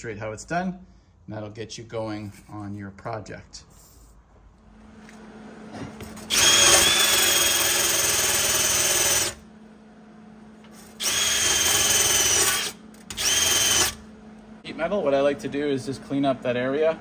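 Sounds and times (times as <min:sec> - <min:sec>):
power tool whining: 0:06.1 - 0:09.4, 0:10.8 - 0:14.1.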